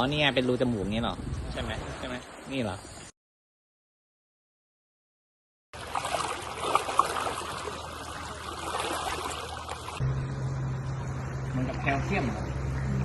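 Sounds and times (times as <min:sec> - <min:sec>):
water trickling and splashing: 0:05.8 - 0:10.0.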